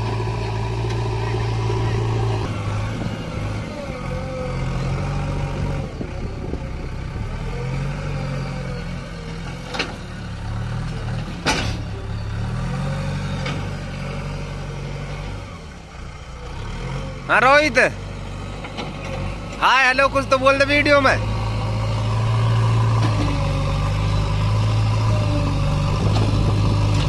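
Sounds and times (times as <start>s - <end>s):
heavy diesel engine revving: 0.0s - 27.0s.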